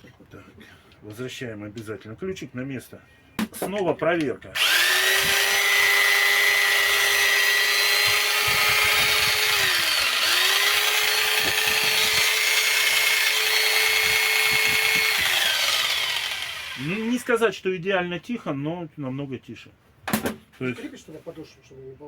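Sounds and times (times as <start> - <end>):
electric jigsaw running: 4.6 - 17.3.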